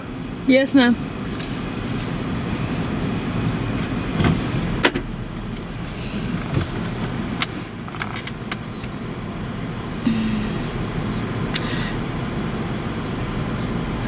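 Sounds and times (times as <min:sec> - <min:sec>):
car engine idling inside cabin: 0:02.0 - 0:14.0
short low hum: 0:10.1 - 0:12.0.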